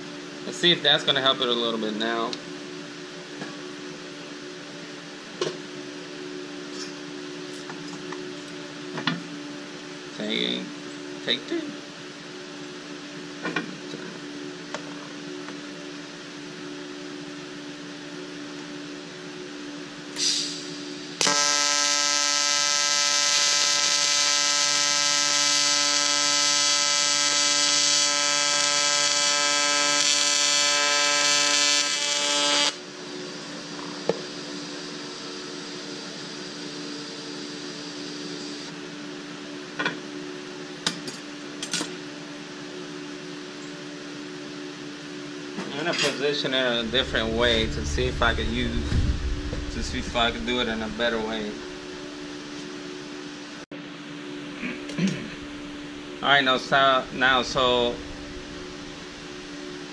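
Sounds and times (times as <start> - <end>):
short hiss: 20.2 - 20.7
welding arc buzzing: 21.2 - 32.8
welding machine hum: 21.2 - 32.8, 57.3 - 59.9.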